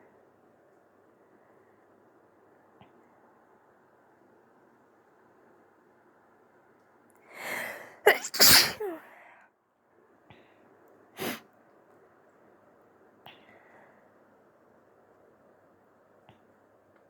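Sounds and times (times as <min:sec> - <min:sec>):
person inhaling: 0:07.3 - 0:09.3
person sneezing: 0:07.5 - 0:09.2.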